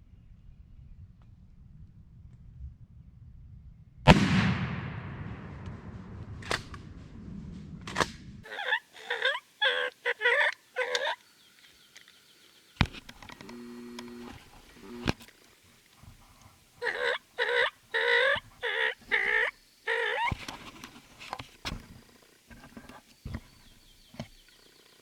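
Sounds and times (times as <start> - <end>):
shotgun shot: 4.1 - 8.4.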